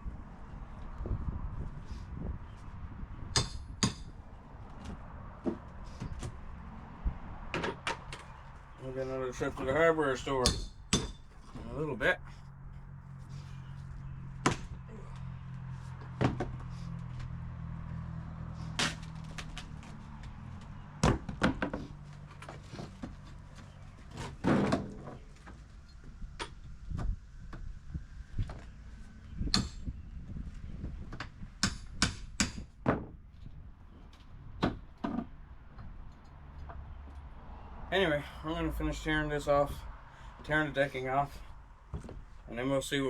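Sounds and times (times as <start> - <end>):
hammer blows on wooden boards: 3.3 - 4.2, 9.0 - 11.9, 31.2 - 33.2.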